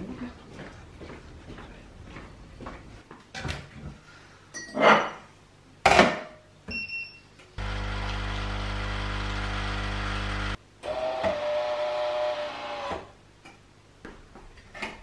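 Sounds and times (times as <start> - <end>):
kitchen appliance humming: 7.6 - 12.4.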